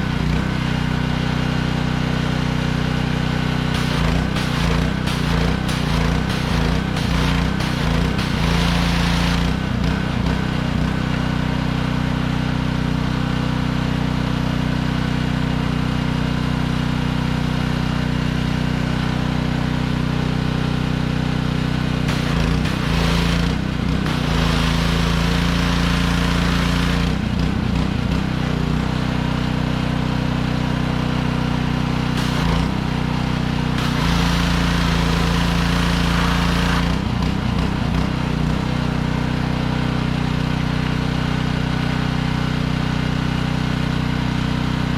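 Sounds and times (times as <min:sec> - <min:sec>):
pressure washer engine running: 0:00.0 - 0:44.9
spray wand hissing: 0:03.7 - 0:09.4.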